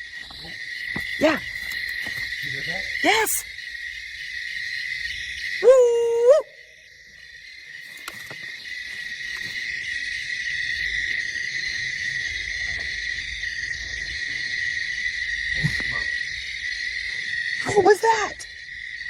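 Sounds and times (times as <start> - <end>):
night insects trilling: 0.0 - 19.0
whooping call: 5.6 - 6.6.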